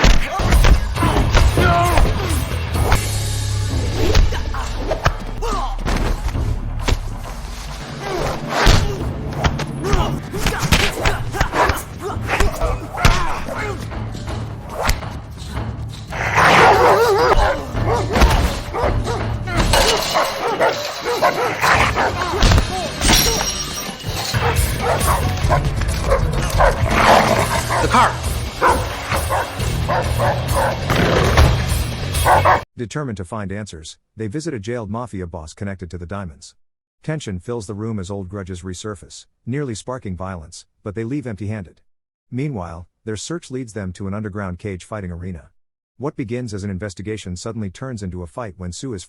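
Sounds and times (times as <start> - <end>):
shouts and grunts: 0.0 - 2.9, 4.2 - 6.3, 9.8 - 13.9, 16.4 - 23.5
background music: 0.4 - 32.6
dog barking: 16.3 - 22.4, 24.3 - 30.8, 32.2 - 32.6.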